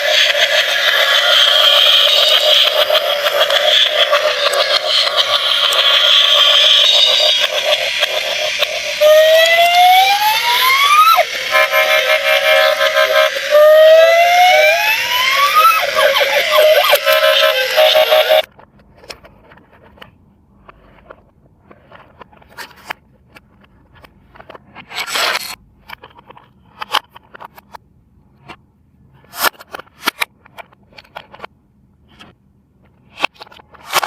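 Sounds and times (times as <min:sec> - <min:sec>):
toy electronic siren: 0:00.0 - 0:18.5.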